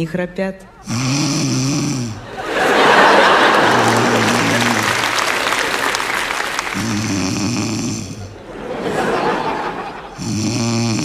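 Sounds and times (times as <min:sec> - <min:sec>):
woman snoring: 0:00.8 - 0:02.3, 0:03.7 - 0:05.4, 0:06.6 - 0:08.4, 0:10.1 - 0:11.0.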